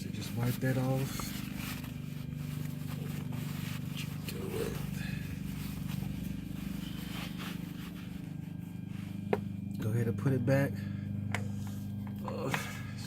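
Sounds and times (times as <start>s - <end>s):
faint rustles and scrapes: 0.0s - 9.7s
low mechanical hum with flutter: 0.0s - 13.0s.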